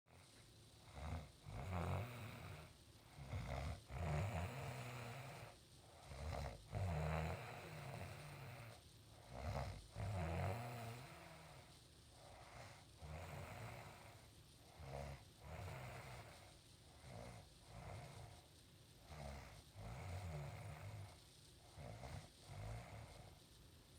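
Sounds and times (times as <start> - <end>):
woman snoring loudly: 0.9 - 11.6.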